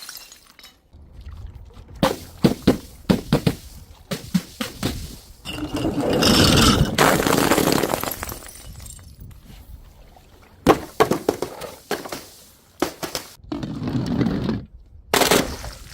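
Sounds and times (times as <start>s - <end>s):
glass bottles shattering: 0.0s - 0.9s, 4.7s - 9.3s.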